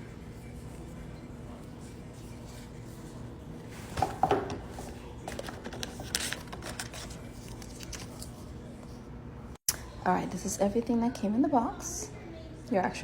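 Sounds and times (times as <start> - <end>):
packaging rustling: 5.3 - 8.4.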